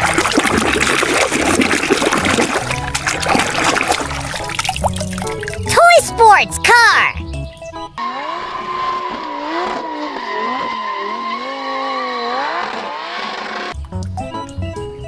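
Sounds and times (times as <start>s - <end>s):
race car engine revving: 8.0s - 13.8s.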